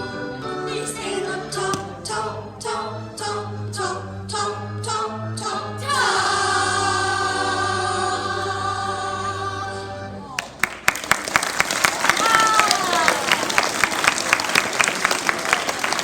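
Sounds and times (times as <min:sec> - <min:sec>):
children singing together: 0:00.0 - 0:10.1
musical backing: 0:00.0 - 0:16.0.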